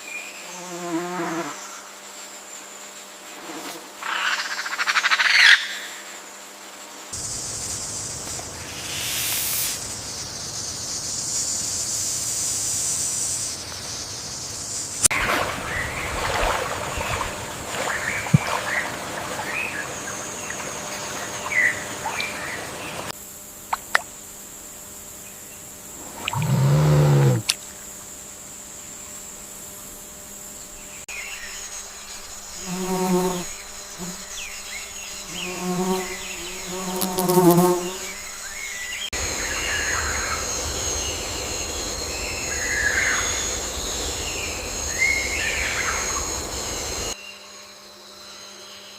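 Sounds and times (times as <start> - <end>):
insects buzzing: 0.0 - 48.9
low animal calls: 26.0 - 27.5.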